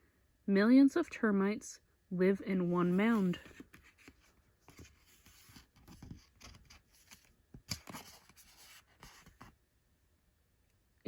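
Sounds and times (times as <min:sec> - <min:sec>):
book pages rustling: 0:02.7 - 0:09.6.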